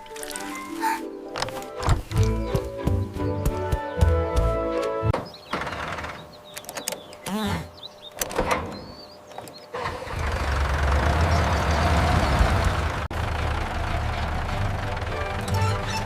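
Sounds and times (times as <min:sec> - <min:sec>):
tractor engine running: 0:09.0 - 0:16.0.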